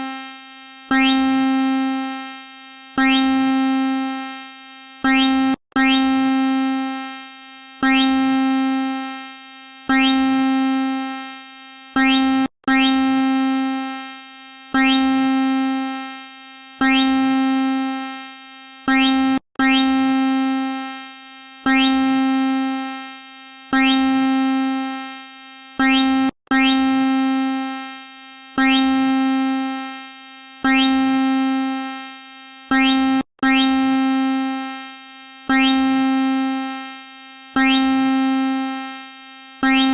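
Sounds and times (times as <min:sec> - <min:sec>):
synthesized alarm tone: 0:00.9 - 0:01.7, 0:03.0 - 0:03.9, 0:05.0 - 0:06.7, 0:07.8 - 0:08.5, 0:09.9 - 0:11.0, 0:12.0 - 0:13.4, 0:14.8 - 0:15.3, 0:16.8 - 0:17.6, 0:18.9 - 0:20.3, 0:21.7 - 0:22.3, 0:23.8 - 0:24.7, 0:25.8 - 0:27.3, 0:28.6 - 0:29.4, 0:30.6 - 0:31.7, 0:32.7 - 0:34.4, 0:35.5 - 0:36.7, 0:37.6 - 0:38.7, 0:39.6 - 0:39.9.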